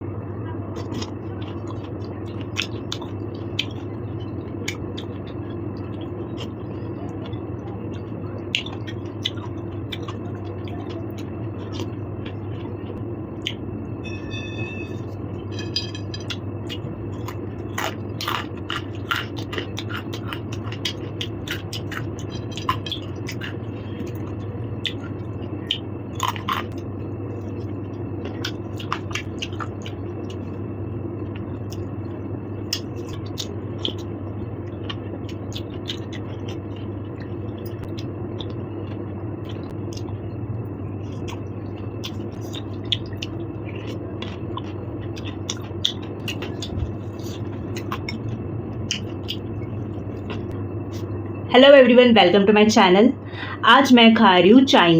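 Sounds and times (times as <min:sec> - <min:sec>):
steady low hum: 0:00.0 - 0:54.9
chewing: 0:00.7 - 0:13.6, 0:15.4 - 0:30.6, 0:32.6 - 0:40.2, 0:41.0 - 0:51.1
ringing clink: 0:14.0 - 0:15.0.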